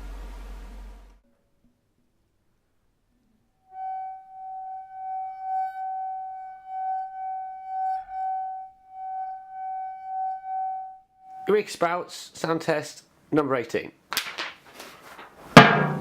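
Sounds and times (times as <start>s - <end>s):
sustained ringing tone: 3.7s - 11.5s.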